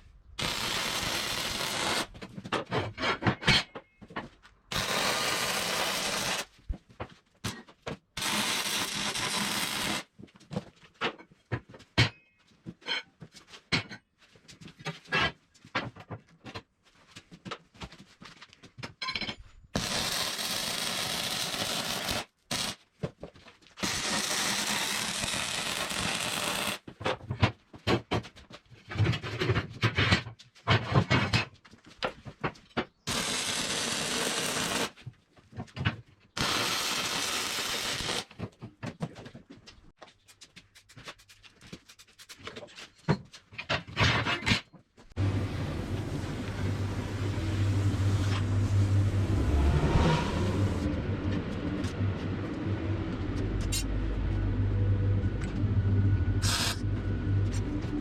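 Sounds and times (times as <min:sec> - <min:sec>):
hissing power tool: 0:00.4 - 0:02.1, 0:04.7 - 0:06.4, 0:08.2 - 0:10.0, 0:19.8 - 0:22.8, 0:23.8 - 0:26.8, 0:33.1 - 0:34.9, 0:36.4 - 0:38.2, 0:45.2 - 0:50.9, 0:56.4 - 0:56.9
low steady hum: 0:45.2 - 0:58.0.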